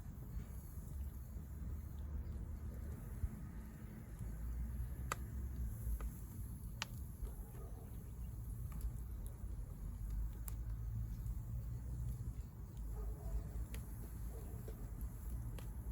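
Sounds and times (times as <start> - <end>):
fire low rumble: 0.0 - 15.9
firewood crackling pops: 4.2 - 15.9.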